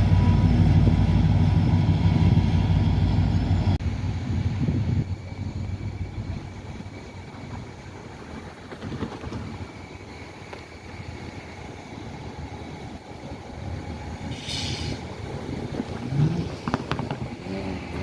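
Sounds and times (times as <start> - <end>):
vehicle low rumble: 0.0 - 18.0
brief hiss: 14.3 - 15.1.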